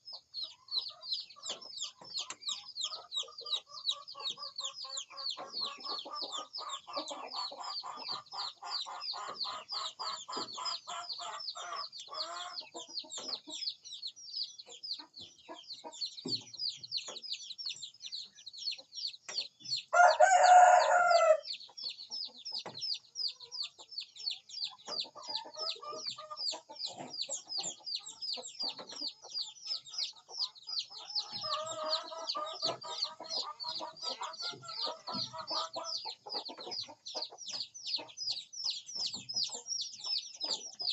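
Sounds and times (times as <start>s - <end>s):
rapid high-pitched chirping: 0.0s - 20.0s, 20.6s - 40.9s
chickens clucking: 0.0s - 40.9s
rooster crowing: 19.9s - 21.4s.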